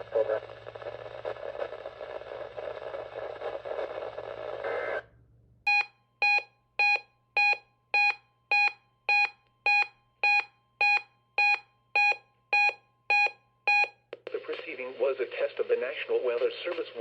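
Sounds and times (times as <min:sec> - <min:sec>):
radio hiss and hum: 0:00.0 - 0:05.1, 0:14.2 - 0:17.0.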